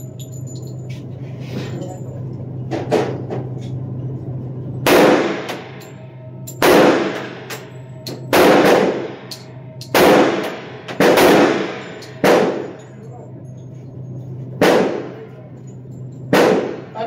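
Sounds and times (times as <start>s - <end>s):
steady low hum: 0.0s - 17.0s
reverberant pistol shots: 4.8s - 5.7s, 6.6s - 7.6s, 8.2s - 9.3s, 9.9s - 12.8s, 14.6s - 15.2s, 16.3s - 17.0s.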